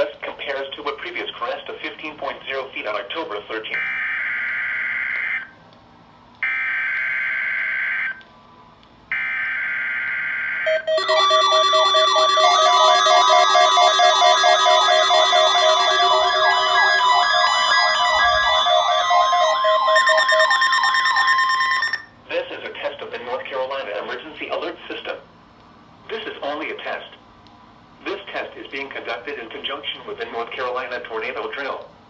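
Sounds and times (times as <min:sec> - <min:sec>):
buzzing data tone bursts: 0:10.7 - 0:22.0
steady tones: 0:10.7 - 0:22.0
warbling siren-like alert tone: 0:10.7 - 0:22.1.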